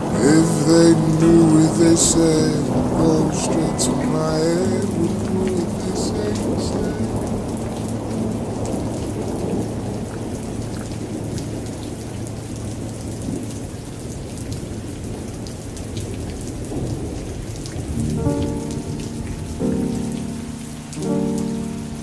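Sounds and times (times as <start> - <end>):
slow music with ringing chords: 0.0 - 11.2, 17.9 - 22.0
steady rain: 0.0 - 22.0
thunder rumbling: 0.0 - 22.0.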